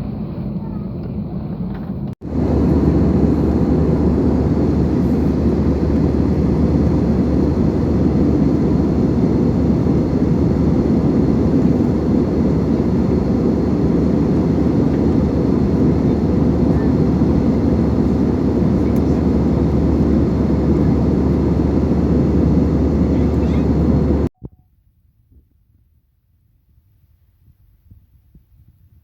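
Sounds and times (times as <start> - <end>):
jet cabin engine and airflow: 0.0 - 24.3.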